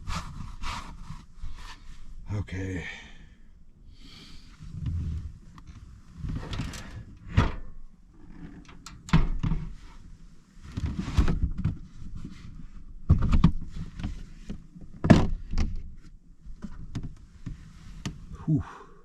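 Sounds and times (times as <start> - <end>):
soft rustling and handling: 9.7 - 13.0.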